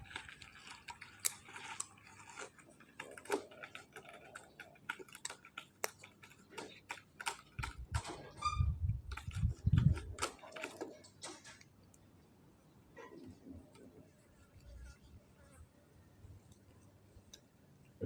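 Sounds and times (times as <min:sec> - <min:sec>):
cat chewing food: 0:00.0 - 0:08.0, 0:09.0 - 0:11.1.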